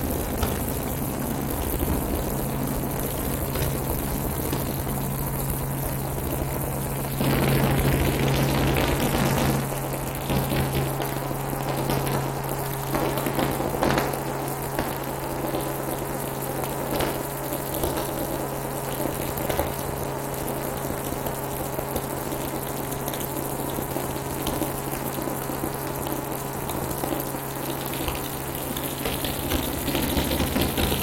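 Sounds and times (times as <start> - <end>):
helicopter cabin hum and rush: 0.0 - 11.0.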